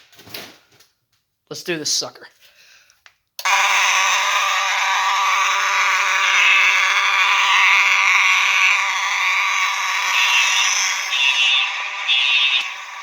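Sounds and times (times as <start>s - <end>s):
fire alarm horns blaring: 3.4s - 13.0s.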